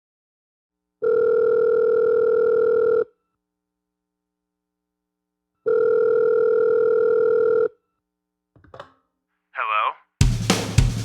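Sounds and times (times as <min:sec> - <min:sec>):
telephone ringback tone: 0:01.0 - 0:03.1, 0:05.6 - 0:07.8.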